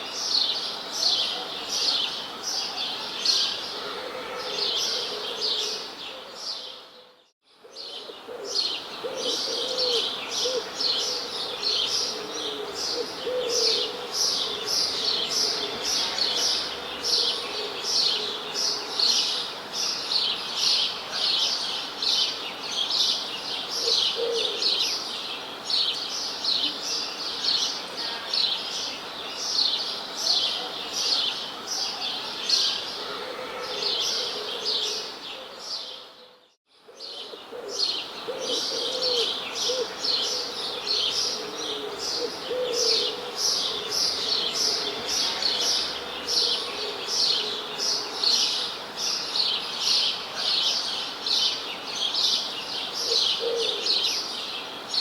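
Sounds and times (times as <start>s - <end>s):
lower bird calls: 32.5s - 49.3s.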